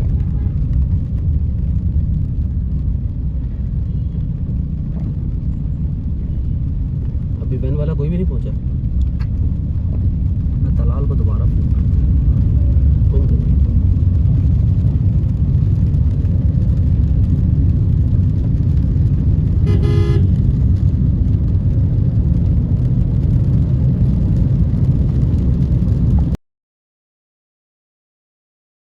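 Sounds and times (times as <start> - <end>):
vehicle rumbling: 0.0 - 26.4
horn toot: 19.6 - 20.4.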